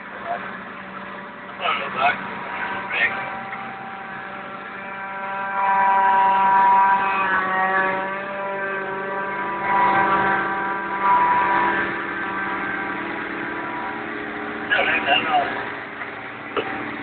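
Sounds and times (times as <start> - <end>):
tractor engine running: 11.9 - 17.0.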